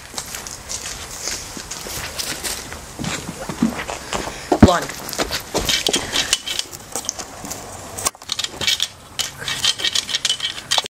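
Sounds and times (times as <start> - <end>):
plastic and glass bits clattering: 8.3 - 10.9.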